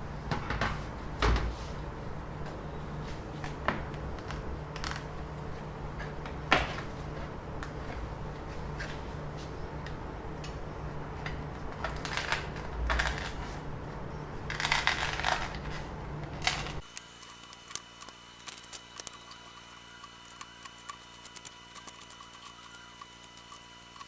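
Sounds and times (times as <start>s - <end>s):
electrical hum: 0.0s - 24.0s
room hum: 0.0s - 24.0s
small objects clicking and rustling: 11.3s - 13.5s, 14.5s - 24.0s.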